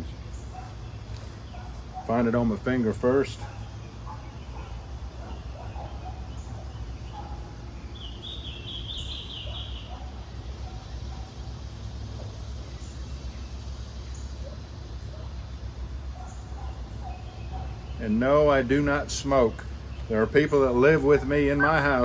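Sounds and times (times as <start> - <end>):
high bird chirps: 3.8 - 11.3.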